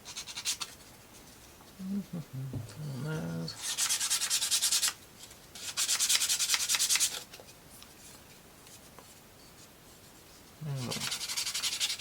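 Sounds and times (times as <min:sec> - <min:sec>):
hand sanding wood: 0:03.6 - 0:05.0, 0:10.8 - 0:12.0.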